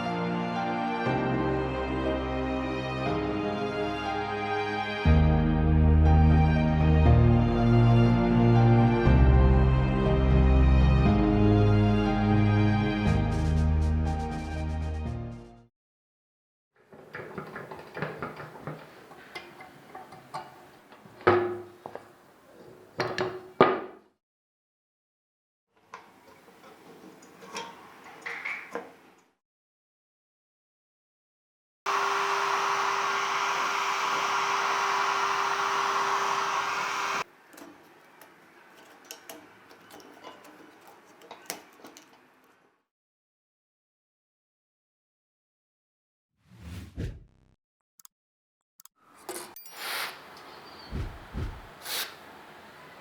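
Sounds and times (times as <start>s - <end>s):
small electric machine whirring: 31.9s - 37.3s.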